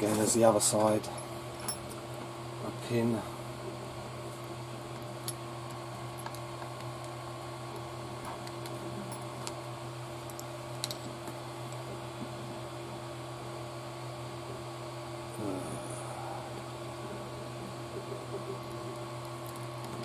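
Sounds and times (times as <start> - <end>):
steady background hum: 0.0 - 20.0
small parts clicking: 10.2 - 11.1.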